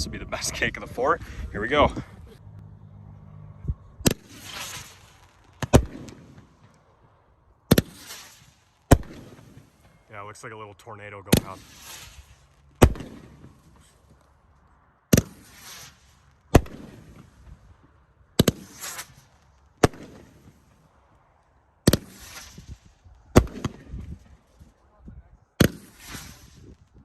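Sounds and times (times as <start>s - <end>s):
firework shots firing: 4.0s - 10.1s, 11.3s - 14.1s, 15.1s - 20.9s, 21.7s - 24.7s, 25.6s - 27.0s
firework shell hissing: 4.1s - 6.2s, 7.7s - 9.7s, 11.6s - 12.7s, 15.2s - 16.4s, 18.4s - 19.6s, 21.9s - 23.0s, 25.6s - 26.8s.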